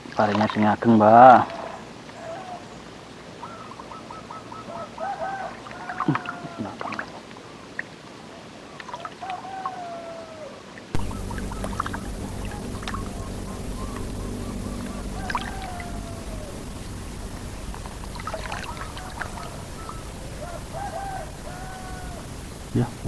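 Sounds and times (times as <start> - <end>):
bird whistled calls: 3.4 - 4.9, 11.0 - 22.3
steady low hum: 11.0 - 23.0.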